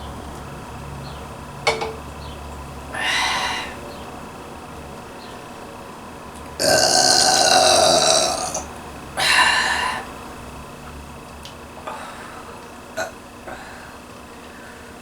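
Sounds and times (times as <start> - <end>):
woman belching: 6.6 - 10.0, 13.0 - 13.2.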